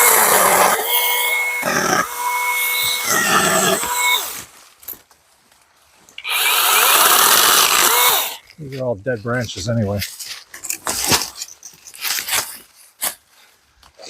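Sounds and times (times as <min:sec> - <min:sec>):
mini chainsaw cutting branches: 0:00.0 - 0:04.5, 0:06.2 - 0:08.4.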